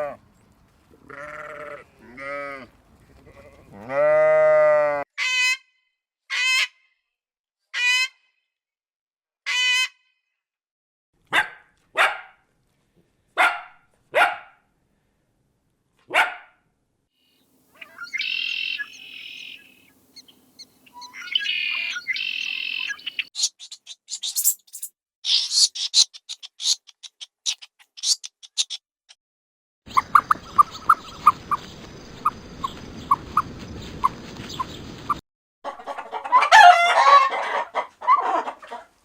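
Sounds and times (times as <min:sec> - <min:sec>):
dog barking: 0:11.3 - 0:12.4, 0:13.4 - 0:14.6, 0:16.1 - 0:16.6
birds calling and chirping: 0:17.7 - 0:28.8, 0:29.9 - 0:35.2.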